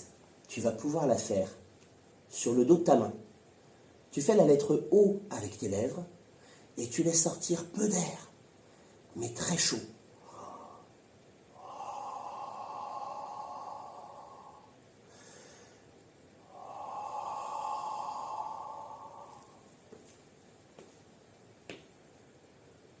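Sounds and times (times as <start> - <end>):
soft breathy exhalations: 10.2 - 20.2.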